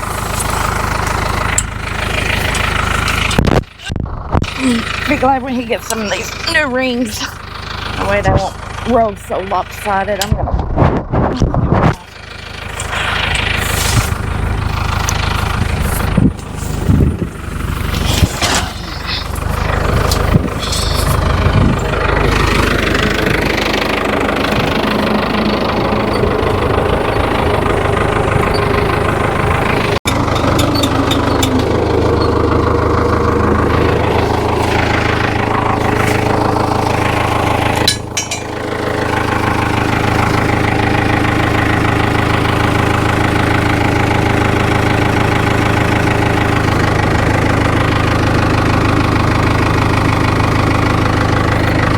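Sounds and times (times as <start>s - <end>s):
tractor engine running: 0.0s - 51.9s
clunks and knocks: 30.0s - 39.2s.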